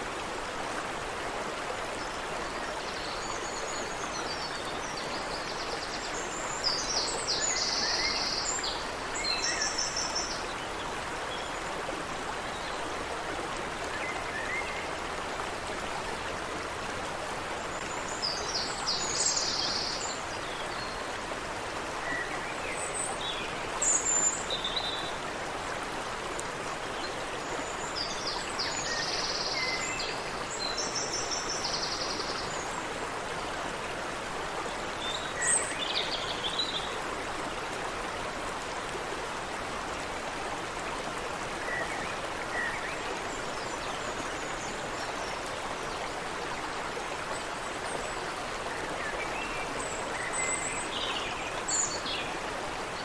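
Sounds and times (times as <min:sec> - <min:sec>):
creek water running: 0:00.0 - 0:53.0
songbirds singing: 0:46.8 - 0:53.0.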